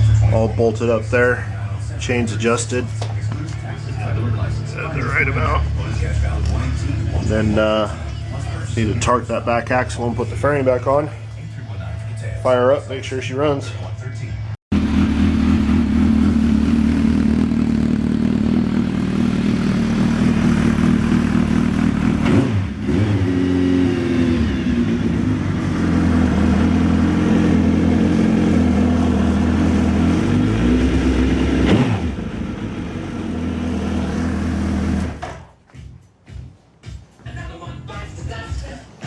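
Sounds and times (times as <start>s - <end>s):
motorcycle engine running: 14.7s - 35.6s.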